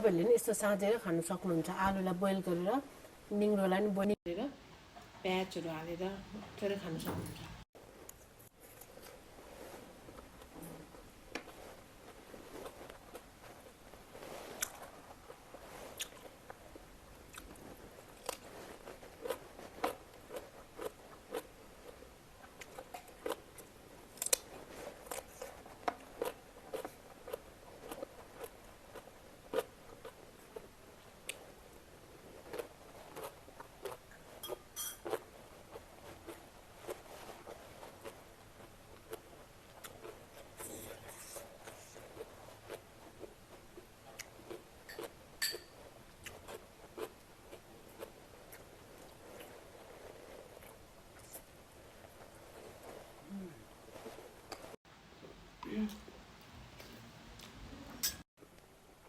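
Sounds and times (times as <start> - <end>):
mouth chewing food: 10.1 - 31.6, 32.3 - 54.8
wet mouth clicks and crunches: 24.2 - 24.5.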